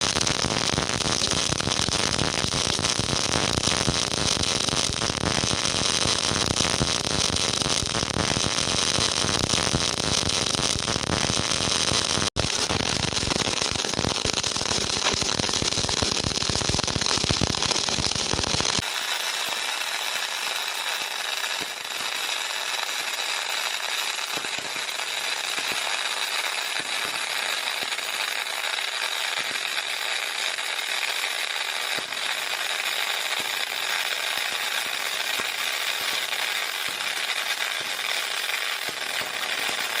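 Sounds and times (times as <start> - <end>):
welding arc crackling: 0.0 - 19.0.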